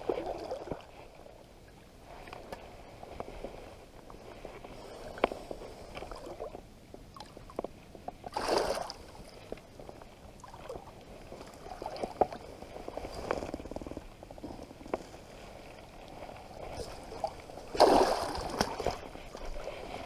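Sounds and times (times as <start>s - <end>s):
water lapping at shoreline: 8.2s - 20.0s.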